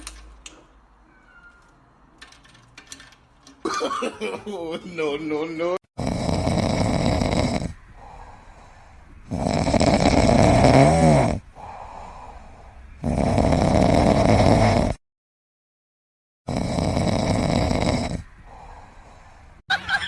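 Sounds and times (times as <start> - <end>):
loud snoring: 6.0 - 8.2, 9.2 - 12.4, 13.0 - 15.0, 16.5 - 18.9
whistling snore tone: 9.2 - 11.4, 16.5 - 18.3.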